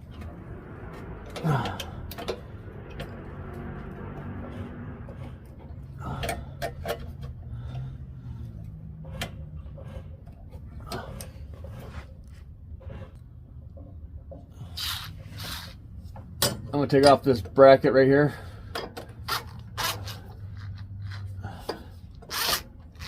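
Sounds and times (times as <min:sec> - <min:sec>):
steady low hum: 0:00.0 - 0:17.6.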